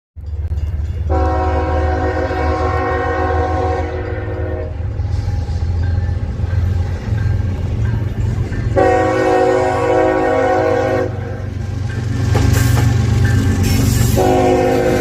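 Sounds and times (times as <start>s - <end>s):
diesel locomotive rumble: 0.2s - 15.0s
train horn blast: 1.0s - 5.8s, 8.7s - 11.5s, 14.0s - 15.0s.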